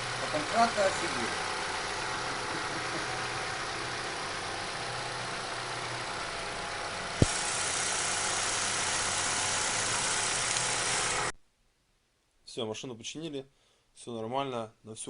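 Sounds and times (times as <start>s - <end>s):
car engine running: 0.0s - 11.3s.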